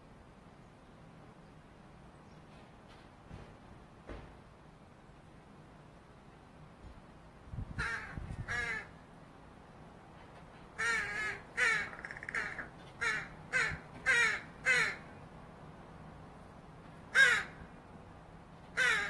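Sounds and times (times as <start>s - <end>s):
crow begging calls: 7.8s - 9.0s, 10.8s - 15.1s, 17.1s - 17.7s, 18.8s - 19.0s.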